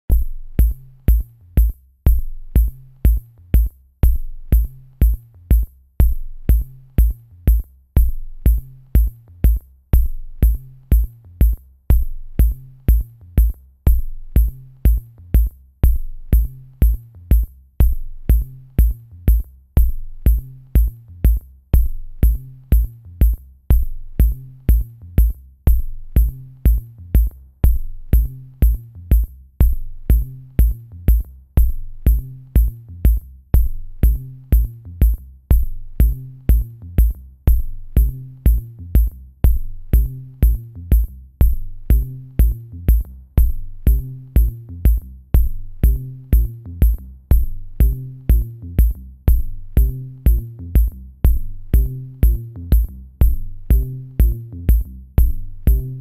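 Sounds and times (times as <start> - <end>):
kick drum hits: 0.1 - 56.0
electronic music: 49.8 - 56.0.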